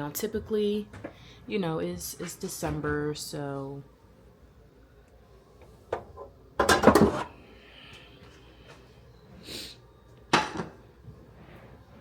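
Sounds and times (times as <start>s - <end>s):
dishes and pans clattering: 6.0s - 7.3s, 10.3s - 10.8s.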